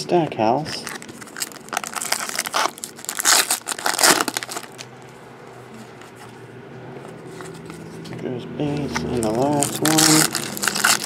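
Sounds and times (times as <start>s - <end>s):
wrapper being torn and crinkled: 0.7s - 4.9s, 9.2s - 11.0s.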